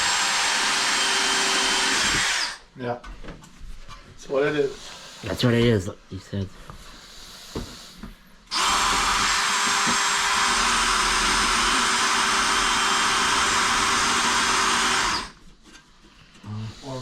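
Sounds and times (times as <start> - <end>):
power drill running: 0.0 - 2.6, 8.5 - 15.4.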